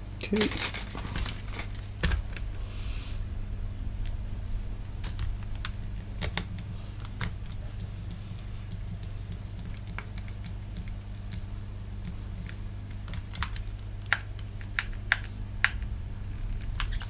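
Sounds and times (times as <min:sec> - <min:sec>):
low electrical hum: 0:00.0 - 0:17.0
light clicks and taps: 0:05.0 - 0:17.0.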